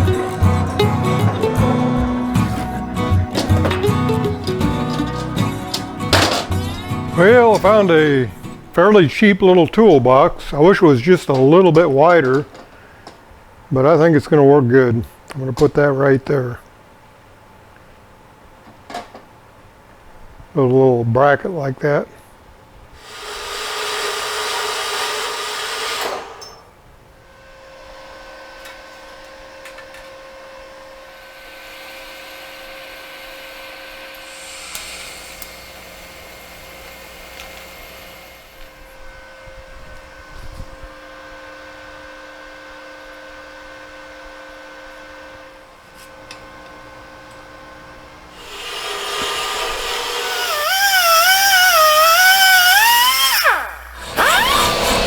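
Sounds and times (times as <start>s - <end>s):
electric drill running: 23.0s - 26.4s, 31.1s - 38.8s, 48.4s - 55.0s.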